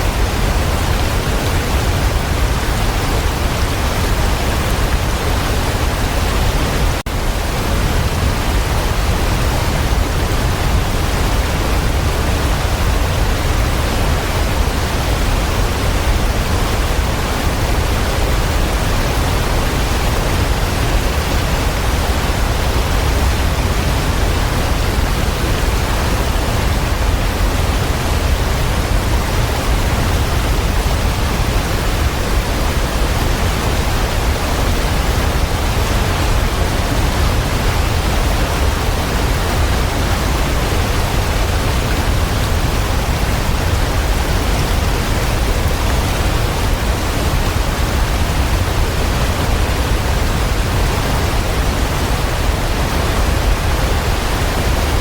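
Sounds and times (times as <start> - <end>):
waterfall rushing: 0.0 - 55.0.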